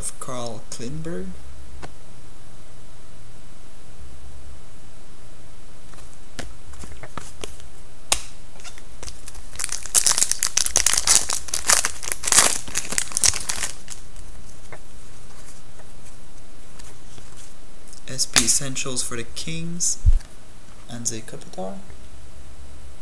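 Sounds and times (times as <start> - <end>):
wrapper tearing and crinkling: 8.6 - 14.0.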